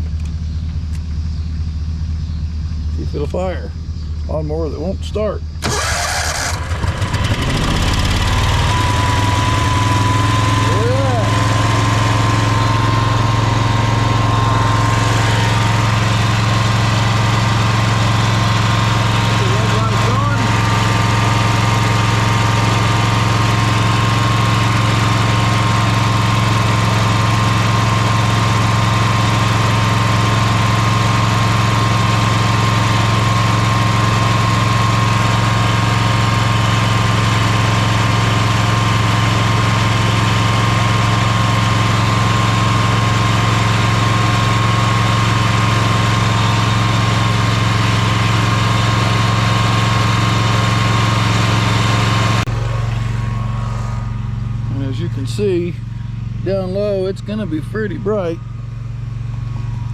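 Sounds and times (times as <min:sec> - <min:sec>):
lawnmower engine running: 0:04.8 - 0:59.9.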